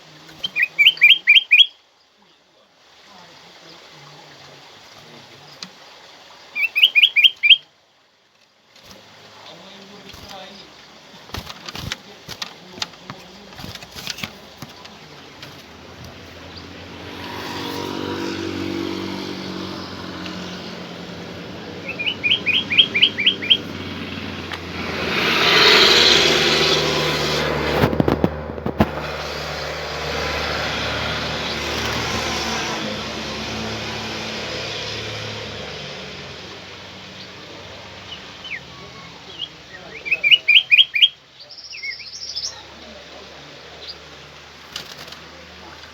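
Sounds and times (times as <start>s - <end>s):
high bird chirps: 0.4s - 1.8s, 6.5s - 7.7s, 15.5s - 24.4s, 38.0s - 42.7s
motor vehicles passing: 8.8s - 40.8s.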